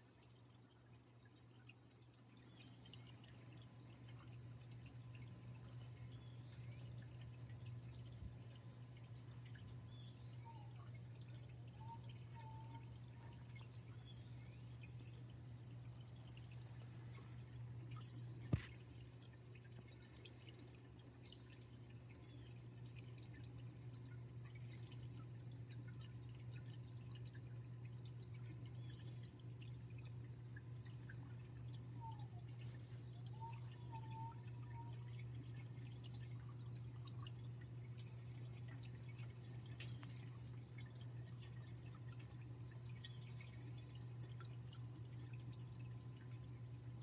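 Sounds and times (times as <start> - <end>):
water drips: 0.0 - 47.0
small waterfall splashing: 16.5 - 27.6.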